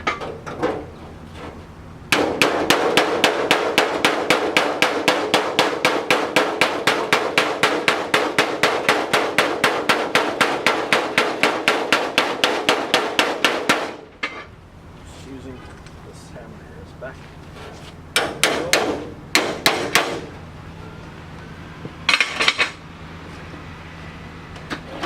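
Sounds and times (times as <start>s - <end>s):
hammer striking sheet metal: 2.1s - 14.4s, 18.2s - 20.3s.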